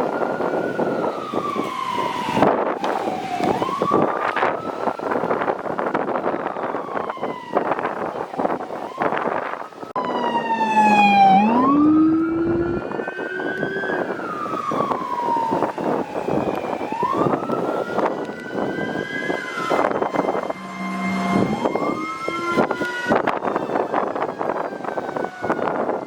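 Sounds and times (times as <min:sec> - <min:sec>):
siren sweeping downward: 0:00.0 - 0:26.0
mechanical siren winding up: 0:10.0 - 0:14.0.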